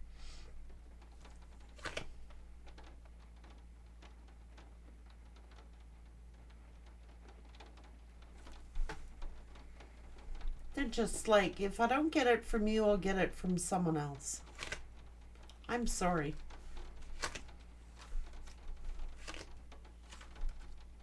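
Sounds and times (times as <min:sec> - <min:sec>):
low steady hum: 0:00.0 - 0:21.0
cards clicking and tapping: 0:00.2 - 0:02.9, 0:08.4 - 0:11.3, 0:14.4 - 0:21.0
card snaps: 0:01.7 - 0:02.2, 0:14.4 - 0:20.8.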